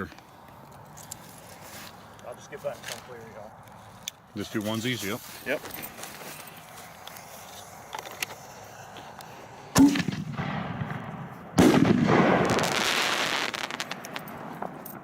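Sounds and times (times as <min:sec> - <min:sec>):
firework bangs with rushing hiss: 0:09.7 - 0:14.8.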